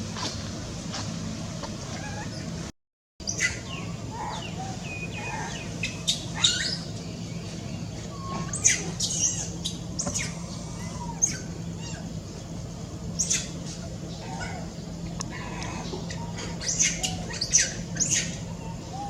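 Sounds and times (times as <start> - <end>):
steady low hum: 0.0 - 19.0
baby monkey squeaking: 6.0 - 6.8.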